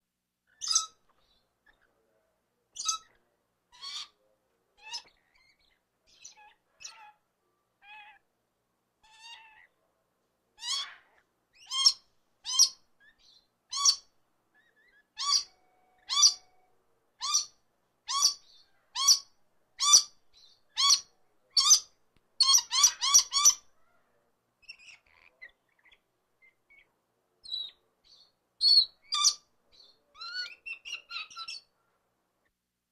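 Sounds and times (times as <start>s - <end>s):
bird calling: 14.6s - 16.6s.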